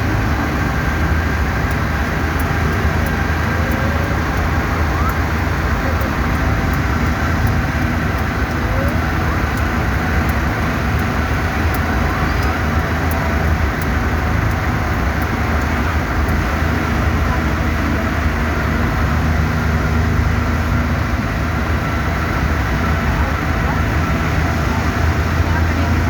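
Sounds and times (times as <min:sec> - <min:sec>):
car driving rumble: 0:00.0 - 0:26.0.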